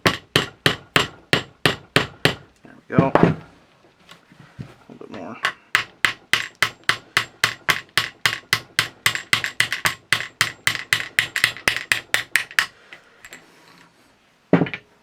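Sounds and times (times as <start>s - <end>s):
hammer tapping metal punch: 0.0s - 3.4s, 5.4s - 12.8s.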